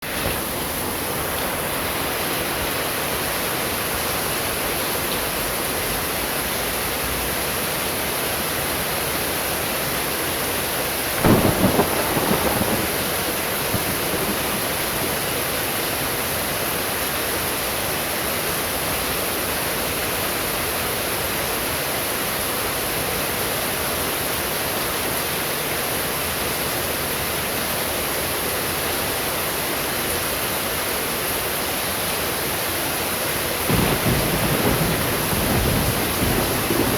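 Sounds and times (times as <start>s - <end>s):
rain hissing: 11.0s - 17.0s, 33.6s - 36.9s
thunder clap rumbling: 11.2s - 16.0s, 33.7s - 36.9s.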